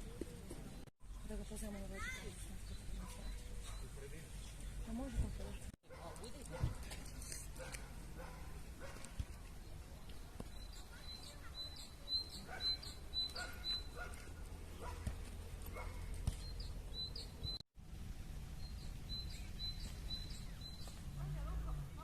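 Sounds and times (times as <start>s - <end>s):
bird chirping: 9.6s - 15.0s, 15.7s - 17.6s, 18.6s - 22.0s
low outdoor rumble: 14.0s - 22.0s.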